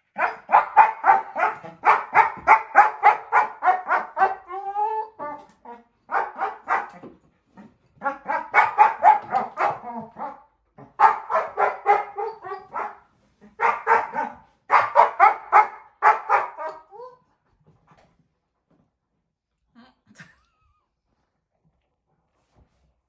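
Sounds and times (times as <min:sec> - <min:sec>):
puppy barking: 0:00.1 - 0:04.6, 0:06.1 - 0:07.1, 0:08.0 - 0:17.0.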